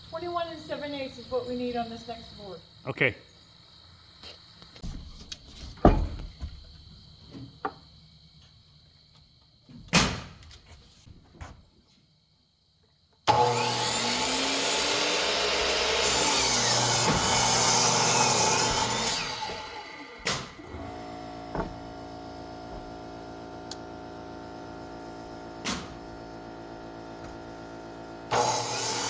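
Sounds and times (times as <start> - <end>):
crickets chirping: 0.0 - 13.2
lumber knocking: 4.8 - 6.6, 21.5 - 21.9
power saw cutting board: 13.3 - 29.0.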